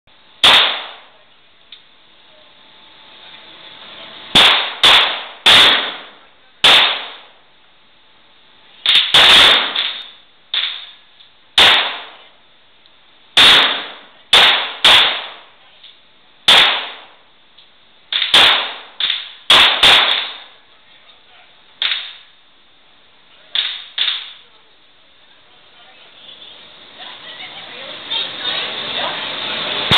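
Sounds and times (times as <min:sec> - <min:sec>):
pistol shots with echo: 0:00.4 - 0:01.2, 0:04.4 - 0:07.3, 0:08.9 - 0:11.0, 0:11.6 - 0:12.2, 0:13.4 - 0:15.5, 0:16.5 - 0:17.2, 0:18.1 - 0:20.5.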